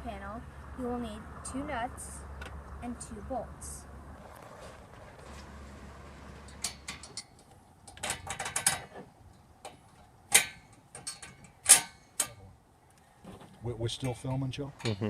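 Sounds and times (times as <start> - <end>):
metal parts clicking and knocking: 6.5 - 9.0, 10.3 - 12.4.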